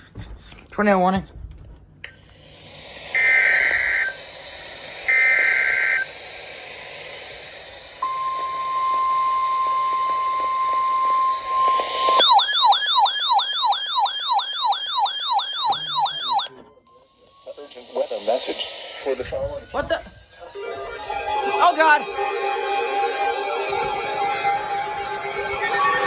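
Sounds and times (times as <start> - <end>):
radio receiver hiss: 2.1 - 8.6, 17.5 - 19.7
steady warning alarm tone: 3.1 - 4.3, 8.0 - 19.0
downward sweeping siren tone: 8.0 - 16.5.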